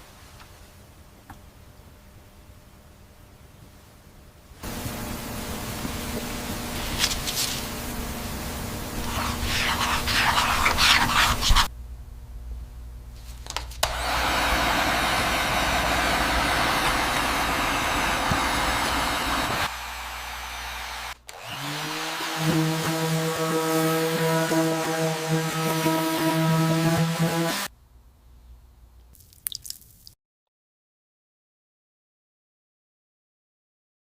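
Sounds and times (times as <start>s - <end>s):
power tools running: 13.8s - 27.7s.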